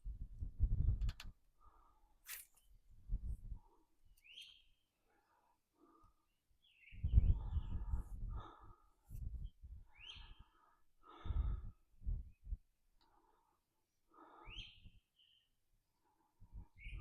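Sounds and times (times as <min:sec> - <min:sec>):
bird chirping: 0:04.2 - 0:04.9, 0:06.6 - 0:07.8, 0:09.9 - 0:10.6, 0:14.4 - 0:15.6
heavy congested breathing: 0:07.4 - 0:09.2, 0:10.4 - 0:11.9.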